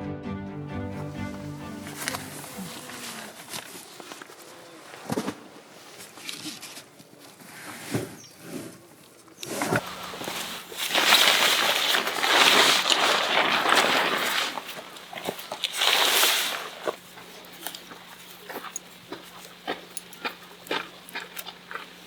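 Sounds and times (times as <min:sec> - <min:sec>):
fabric rustling and crinkling: 0:09.5 - 0:17.1.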